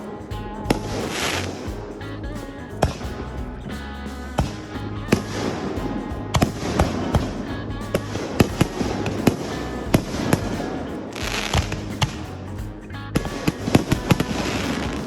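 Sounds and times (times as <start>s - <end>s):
fireworks crackling: 0.0s - 15.0s
music: 0.0s - 15.0s.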